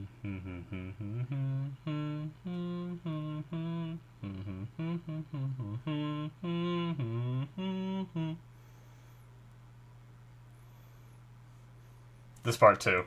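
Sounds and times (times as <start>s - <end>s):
man humming a melody: 0.0s - 8.5s
steady low hum: 0.0s - 13.0s.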